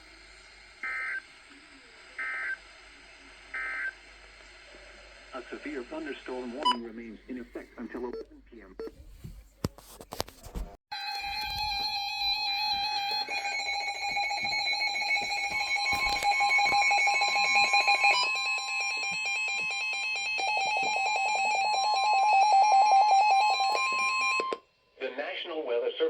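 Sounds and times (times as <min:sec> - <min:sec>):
steady warning alarm tone: 0:00.8 - 0:01.3, 0:02.2 - 0:02.7, 0:03.5 - 0:04.0, 0:11.8 - 0:24.6.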